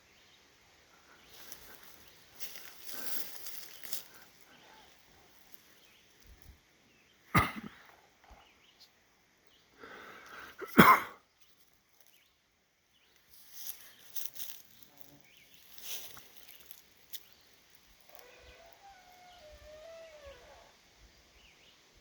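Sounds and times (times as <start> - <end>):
faint scuffling: 1.3 - 5.7, 13.3 - 17.3
animal calls in a tree: 18.1 - 20.8.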